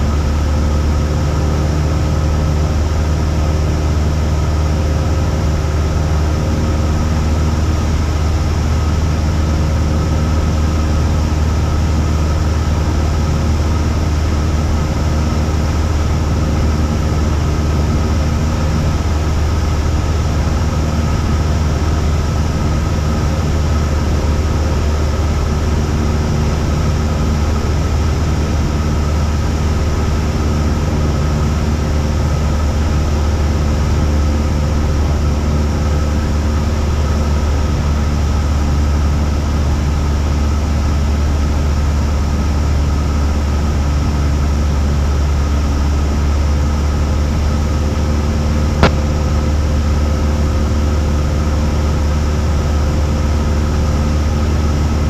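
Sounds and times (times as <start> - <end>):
propeller plane engine droning: 0.0 - 55.0
sharp click: 48.8 - 49.0.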